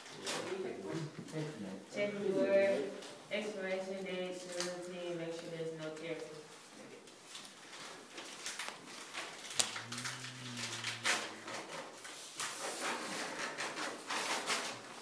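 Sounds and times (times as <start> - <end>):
packaging rustling and crinkling: 7.1 - 15.0.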